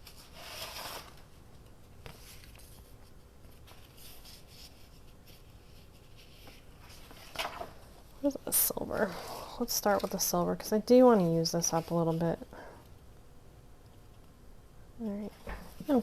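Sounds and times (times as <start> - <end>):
paper rustling: 0.0 - 7.8.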